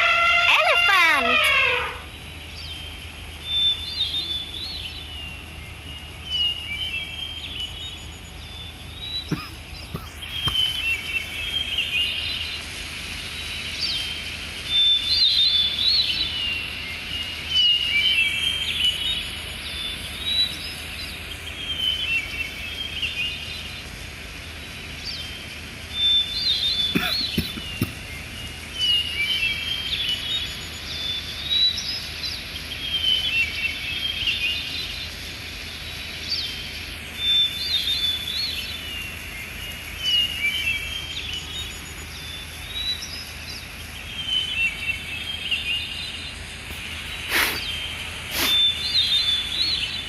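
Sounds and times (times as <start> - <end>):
small birds chirping: 0.5 - 50.0
steady background hiss: 0.6 - 50.0.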